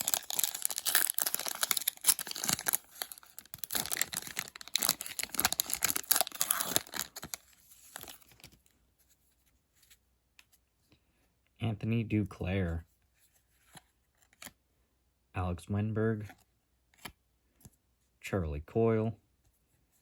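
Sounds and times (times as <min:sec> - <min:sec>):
card pack wrapper tearing: 0:00.0 - 0:08.6.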